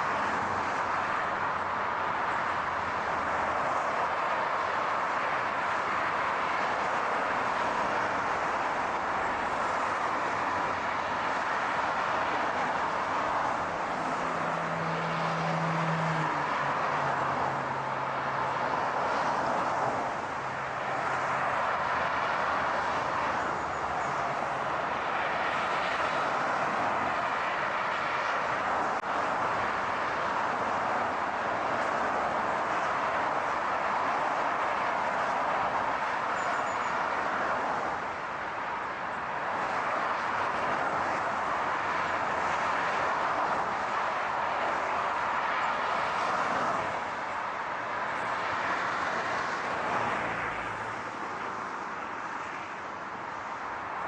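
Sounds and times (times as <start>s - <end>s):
car road noise: 0.0s - 54.0s.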